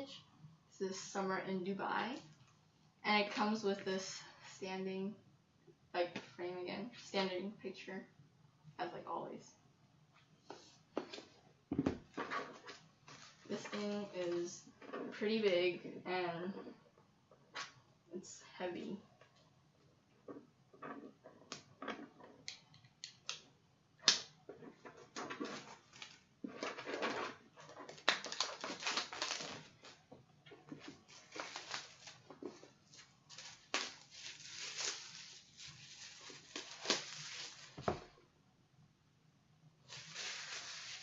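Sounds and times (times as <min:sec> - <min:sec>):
packaging rustling and crinkling: 0:12.1 - 0:14.4, 0:24.7 - 0:38.2, 0:39.9 - 0:41.0.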